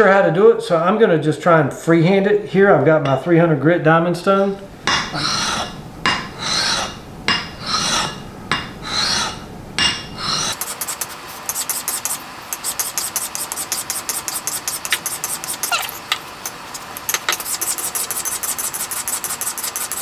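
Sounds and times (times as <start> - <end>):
steady hum: 1.4 - 20.0
blade scraping on sharpening stone: 4.9 - 20.0.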